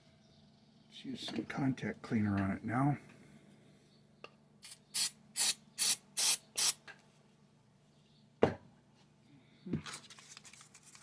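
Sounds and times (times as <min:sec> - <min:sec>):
aerosol spray hissing: 0:04.6 - 0:06.8.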